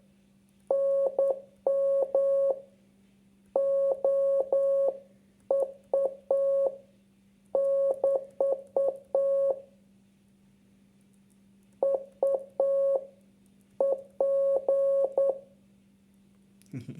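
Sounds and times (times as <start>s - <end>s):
morse code beeps: 0.7s - 2.6s, 3.6s - 6.7s, 7.6s - 9.6s, 11.8s - 13.0s, 13.8s - 15.4s.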